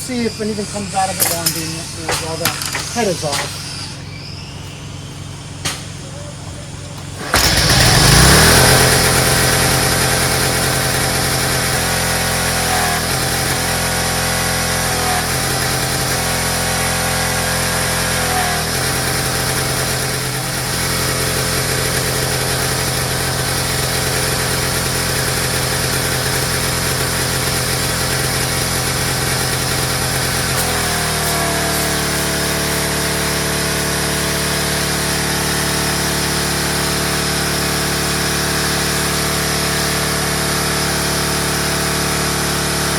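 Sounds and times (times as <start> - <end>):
pressure washer engine running: 0.0 - 42.9.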